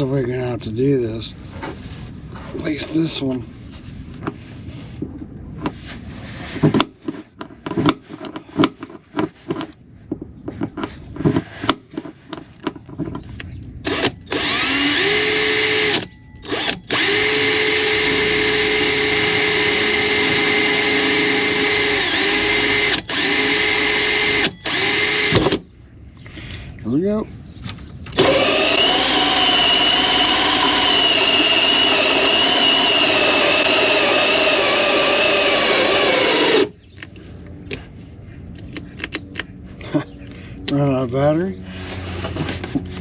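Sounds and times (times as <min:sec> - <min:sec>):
power drill whining: 0:13.8 - 0:25.6, 0:28.1 - 0:36.8.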